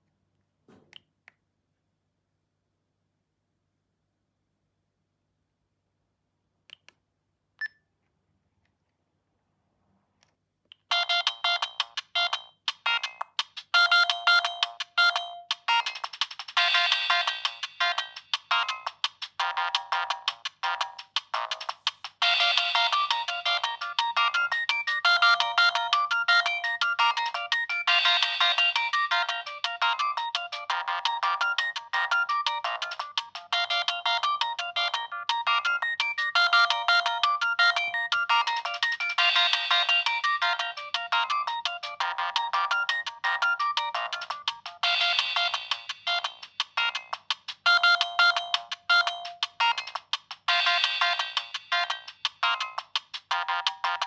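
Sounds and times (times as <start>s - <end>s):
mobile phone ringtone: 10.9s - 13.0s, 13.8s - 15.9s, 22.2s - 32.8s, 33.6s - 44.2s, 47.7s - 49.9s, 50.5s - 52.0s.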